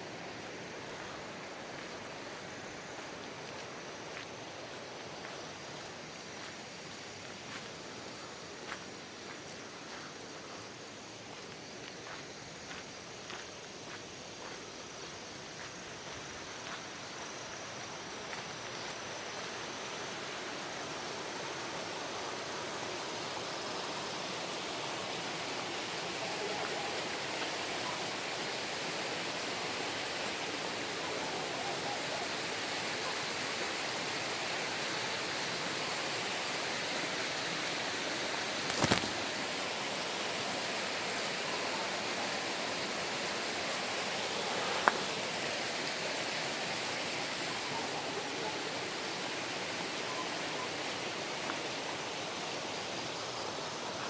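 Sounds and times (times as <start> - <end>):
stream water rushing: 0.0 - 54.0.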